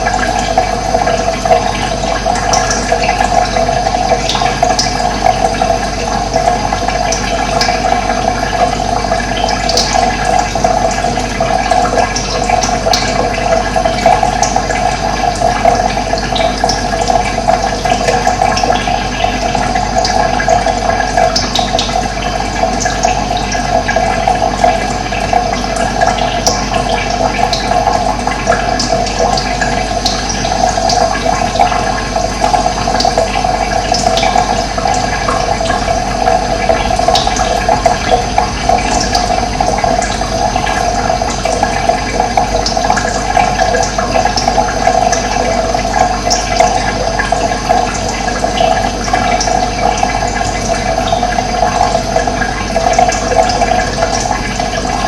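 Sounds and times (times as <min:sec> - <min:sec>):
running water flowing: 0:00.0 - 0:55.0.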